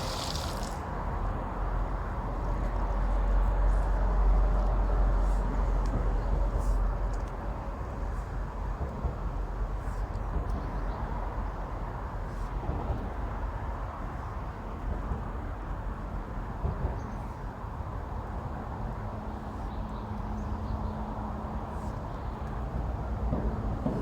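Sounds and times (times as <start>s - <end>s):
road traffic rumble: 0.0s - 16.5s.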